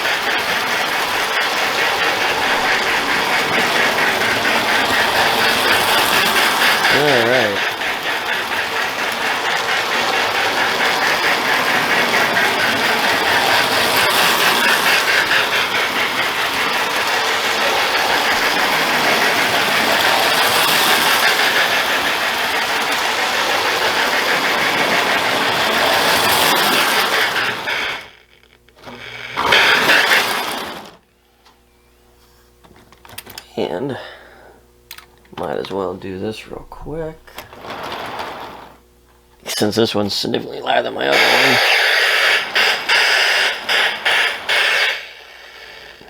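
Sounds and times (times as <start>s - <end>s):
toy train clattering on track: 0.0s - 31.0s, 32.7s - 33.5s, 34.9s - 36.0s, 36.6s - 38.8s, 39.4s - 46.0s.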